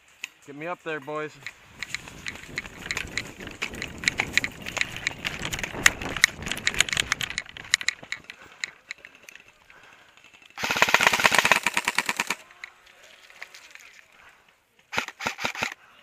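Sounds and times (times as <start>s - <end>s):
airsoft guns firing: 10.6s - 12.6s, 14.9s - 15.8s.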